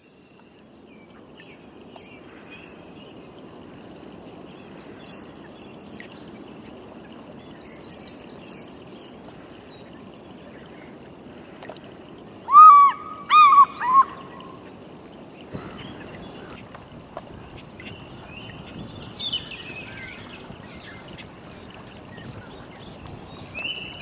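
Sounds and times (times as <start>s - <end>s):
steady background hiss: 0.0s - 24.0s
bird call of arched notes: 12.5s - 14.6s.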